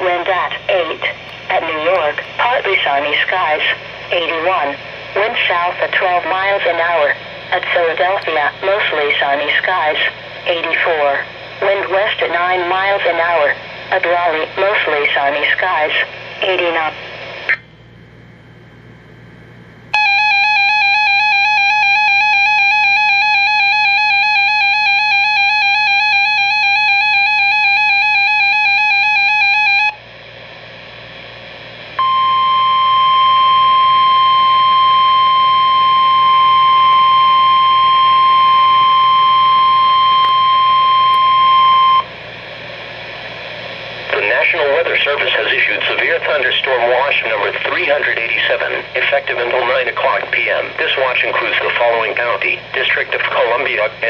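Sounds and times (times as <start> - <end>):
steady alarm tone: 19.9 - 30.3, 30.9 - 53.8.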